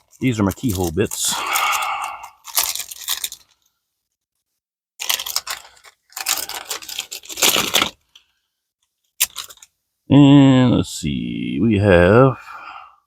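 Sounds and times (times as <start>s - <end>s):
plastic packaging tearing: 0.0s - 3.7s, 5.0s - 8.2s, 9.2s - 9.7s.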